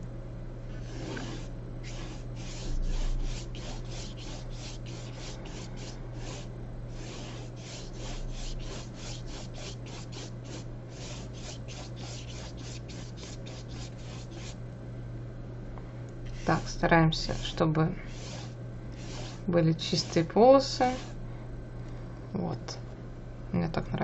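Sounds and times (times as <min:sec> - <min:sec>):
paintbrush scrubbing on paper: 0:00.8 - 0:14.6, 0:16.3 - 0:21.2.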